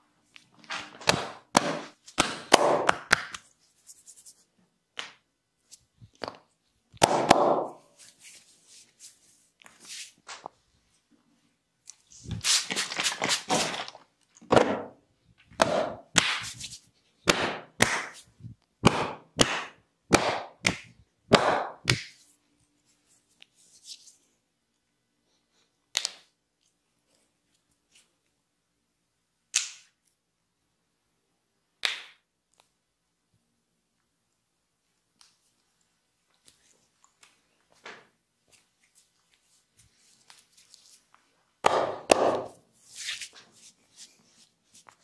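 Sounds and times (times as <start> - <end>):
hands slapping skin: 1.0 - 3.5, 15.6 - 22.2, 25.9 - 26.3, 29.5 - 30.0, 31.8 - 32.7, 41.6 - 43.4
scratchy rubbing of hair: 3.6 - 4.5, 12.1 - 13.6, 42.8 - 45.0.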